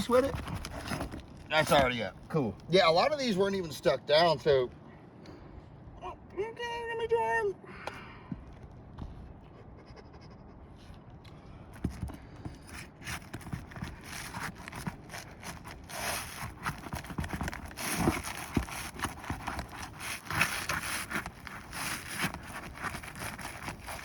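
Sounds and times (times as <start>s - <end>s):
roof shingles scraping and crackling: 0.0s - 3.9s, 12.6s - 24.0s.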